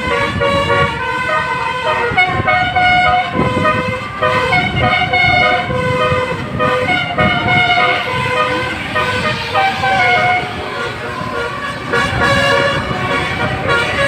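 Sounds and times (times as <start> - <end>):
low engine rumble: 0.0 - 14.0
multi-tone bus horn melody: 0.0 - 14.0.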